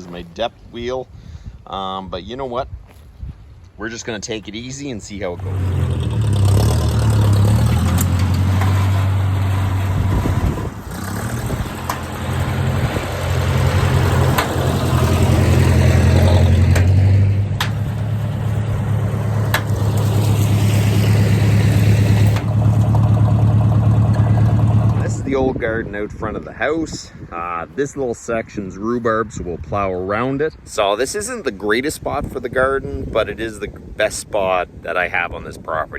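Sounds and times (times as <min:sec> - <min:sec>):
tractor engine running: 0:05.3 - 0:26.3.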